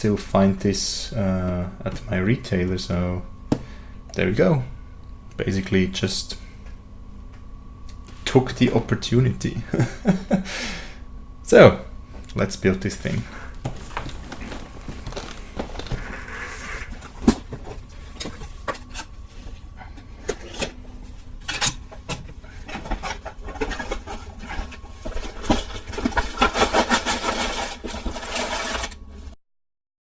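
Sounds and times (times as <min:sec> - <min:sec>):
steady low hum: 0:00.0 - 0:29.4
rapid rattling: 0:21.4 - 0:28.9.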